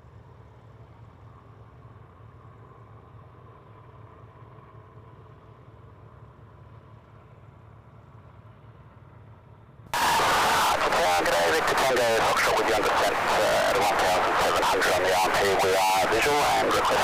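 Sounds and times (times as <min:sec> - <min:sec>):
thin steady whine: 0:10.0 - 0:17.0.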